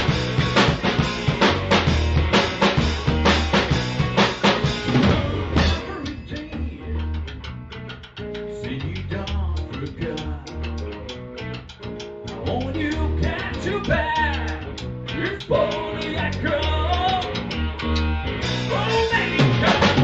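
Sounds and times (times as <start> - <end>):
heavy drum hits: 0.0 - 6.0
blues-rock band playing: 0.0 - 20.0.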